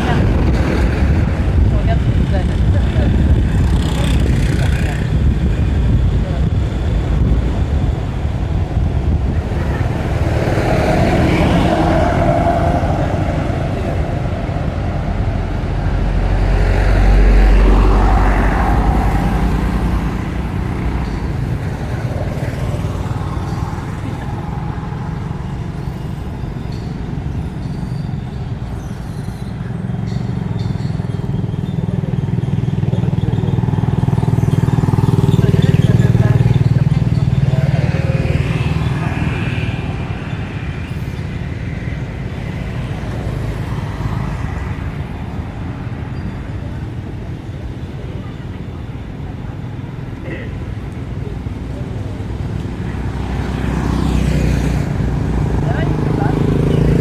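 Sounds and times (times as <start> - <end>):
traffic engine rumble: 0.0 - 57.0
faint voices: 30.6 - 40.3, 46.5 - 53.8.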